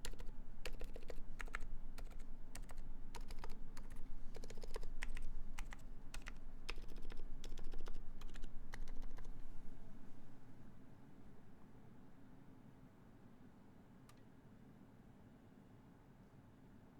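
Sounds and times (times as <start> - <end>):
soft mechanical keyboard typing: 0.0 - 9.5.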